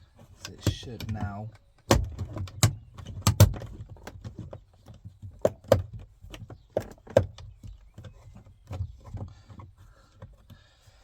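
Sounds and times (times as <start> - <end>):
plastic trim clicking and knocking: 0.4 - 9.3.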